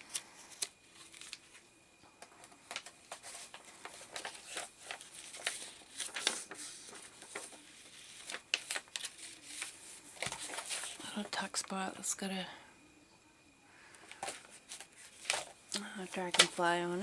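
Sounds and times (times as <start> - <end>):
paper rustling and crinkling: 0.0 - 1.6, 2.2 - 11.4, 14.0 - 17.0.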